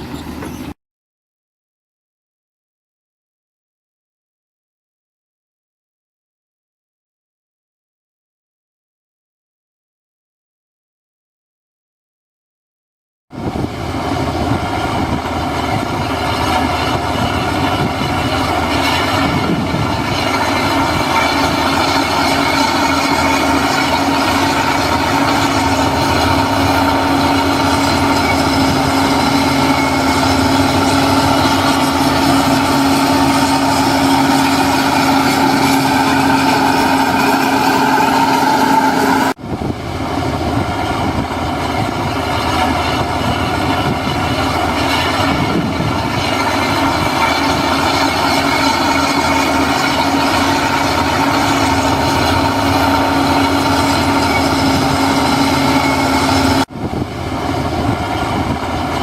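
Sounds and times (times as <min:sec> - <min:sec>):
heavy diesel machinery running: 0:00.0 - 0:00.8, 0:13.3 - 0:59.0.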